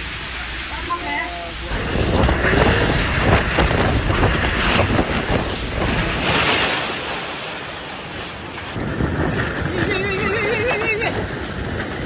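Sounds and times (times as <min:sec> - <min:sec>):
storm wind roaring: 0:00.0 - 0:12.0
rapid clattering and knocking: 0:01.8 - 0:06.6.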